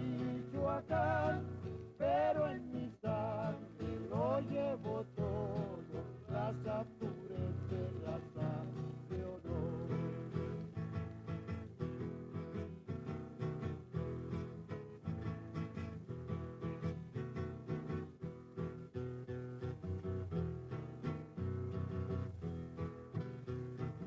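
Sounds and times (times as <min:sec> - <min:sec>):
acoustic guitars strumming: 0:00.0 - 0:24.0.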